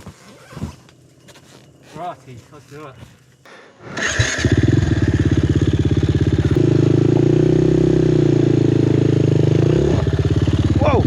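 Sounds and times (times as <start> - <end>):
dirt bike engine revving: 3.8 - 11.0.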